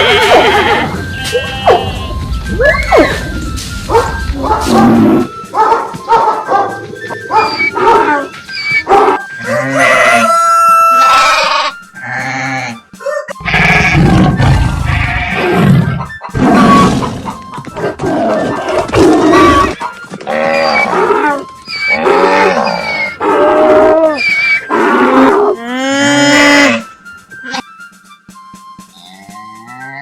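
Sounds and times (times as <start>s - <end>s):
background music: 0.0s - 30.0s
animal calls and grunts: 7.0s - 10.3s, 10.9s - 26.8s.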